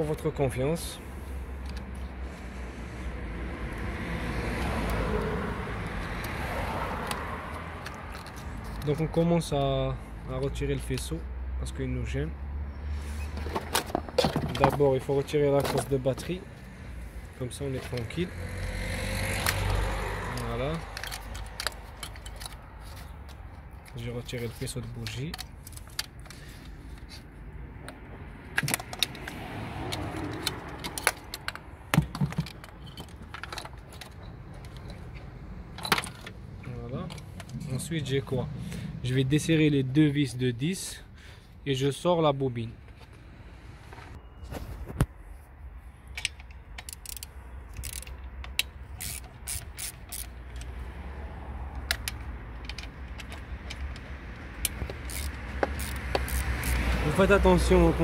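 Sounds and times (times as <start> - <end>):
ratchet wrench clicking: 19.4 - 22.6, 46.2 - 50.8, 51.7 - 57.4.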